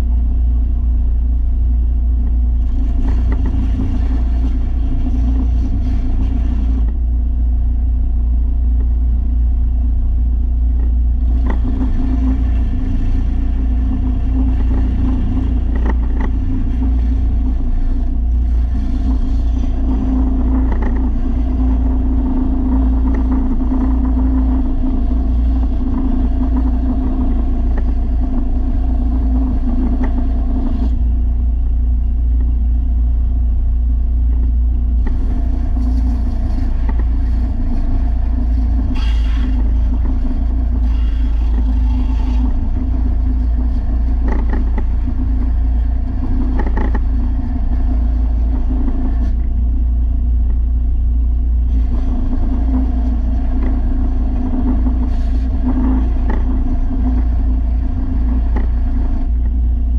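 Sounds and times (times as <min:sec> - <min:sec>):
steel blade grinding on sander: 0:02.6 - 0:06.9, 0:11.2 - 0:31.0, 0:35.0 - 0:49.5, 0:51.7 - 0:59.3.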